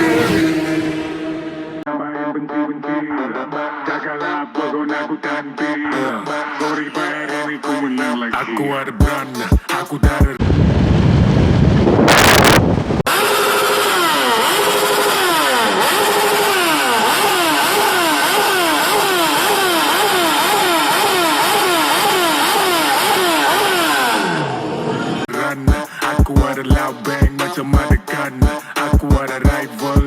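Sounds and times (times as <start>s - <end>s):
motorcycle engine revving: 0.0s - 1.9s, 12.1s - 25.3s
loud rush of noise: 10.4s - 13.8s.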